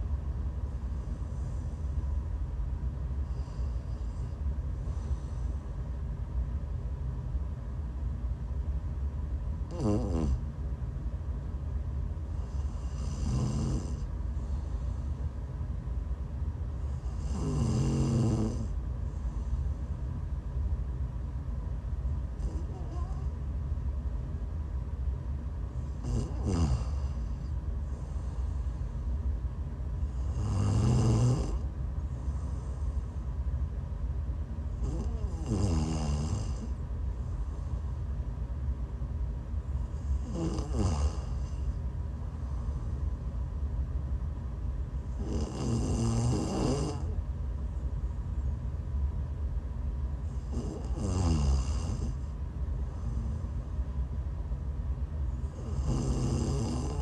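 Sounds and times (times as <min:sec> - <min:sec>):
steady low hum: 0:00.0 - 0:57.0
woman snoring: 0:09.7 - 0:10.4, 0:12.4 - 0:14.1, 0:16.9 - 0:18.8, 0:22.4 - 0:23.3, 0:26.0 - 0:27.5, 0:30.1 - 0:31.6, 0:34.8 - 0:36.8, 0:40.1 - 0:41.6, 0:45.1 - 0:47.2, 0:50.3 - 0:52.2, 0:55.4 - 0:57.0.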